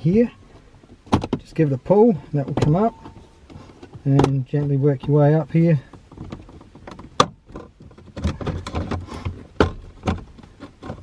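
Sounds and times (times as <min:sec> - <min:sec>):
plastic knocks: 0:01.0 - 0:01.5, 0:06.1 - 0:11.0.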